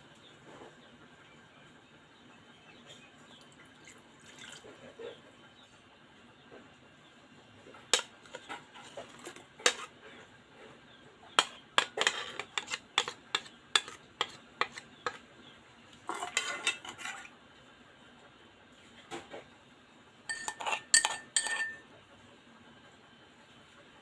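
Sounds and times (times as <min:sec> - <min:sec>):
utensils clinking against dishes: 0:07.9 - 0:09.9, 0:11.4 - 0:15.2, 0:16.0 - 0:17.3, 0:20.3 - 0:21.9
rough scraping: 0:08.8 - 0:10.0, 0:11.8 - 0:15.2, 0:16.0 - 0:17.3.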